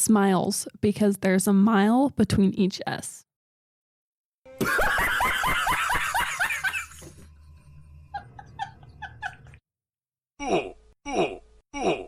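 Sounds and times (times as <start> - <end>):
person laughing: 4.6 - 7.1, 8.2 - 9.6, 10.4 - 12.0.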